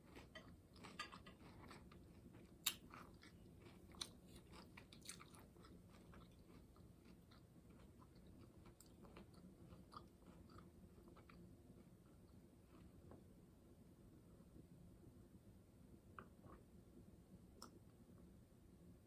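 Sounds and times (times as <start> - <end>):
person chewing food: 0.0 - 13.2.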